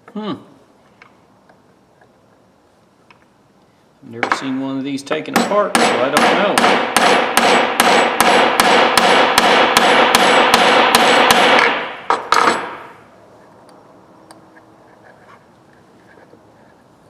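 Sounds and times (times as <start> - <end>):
hammer tapping metal punch: 5.3 - 12.8.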